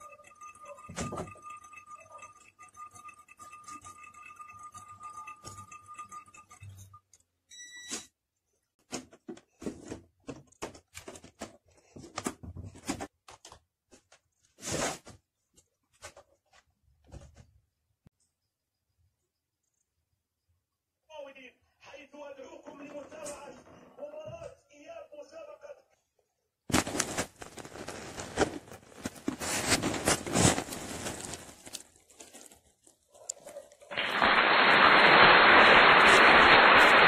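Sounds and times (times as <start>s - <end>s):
high electronic whine: 0.0s - 6.8s
short electronic beep: 0.0s - 8.1s.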